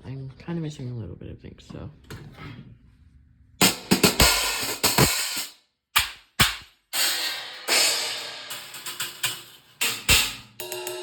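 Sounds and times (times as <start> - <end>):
drum hits: 3.6 - 11.0
cymbal crashes: 7.0 - 11.0.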